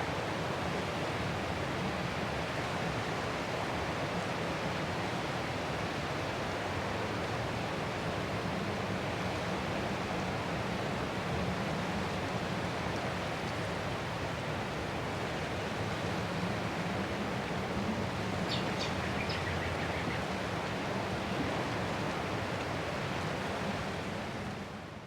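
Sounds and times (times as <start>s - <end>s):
ocean surf washing ashore: 11.4s - 25.0s.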